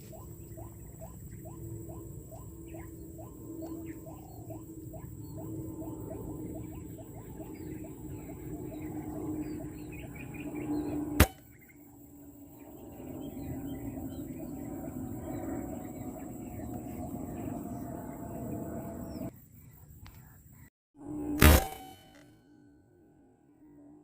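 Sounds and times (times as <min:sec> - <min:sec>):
birds chirping: 0:00.0 - 0:20.7
sharp gunshot: 0:11.2 - 0:11.4, 0:21.4 - 0:22.2.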